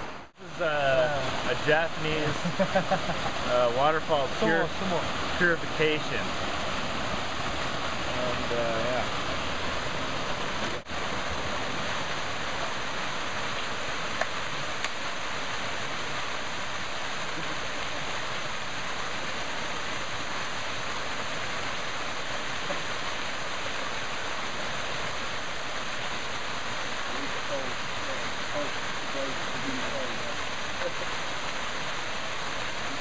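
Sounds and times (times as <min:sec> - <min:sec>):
waterfall rushing: 0:00.0 - 0:33.0.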